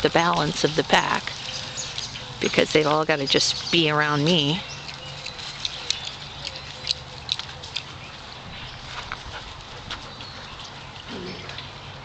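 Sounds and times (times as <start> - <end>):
sharp clicks and ticks: 0.2 - 8.0.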